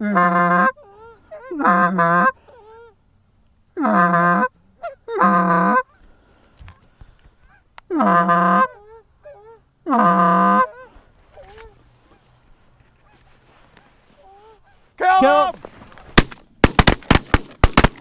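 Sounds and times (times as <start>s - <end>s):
goose honking: 0.0s - 2.9s, 3.8s - 6.0s, 7.4s - 12.3s.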